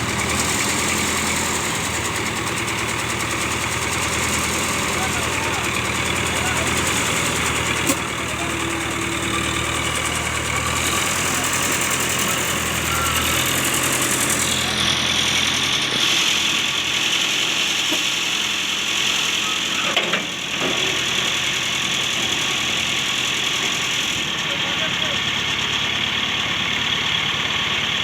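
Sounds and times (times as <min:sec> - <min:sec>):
concrete mixer engine running: 0:00.0 - 0:28.0.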